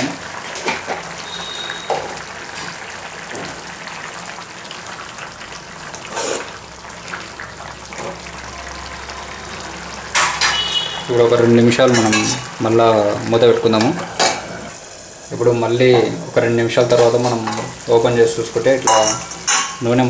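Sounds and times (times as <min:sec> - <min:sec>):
curry bubbling in a pan: 0:00.0 - 0:20.0
spoon knocking: 0:18.8 - 0:19.9.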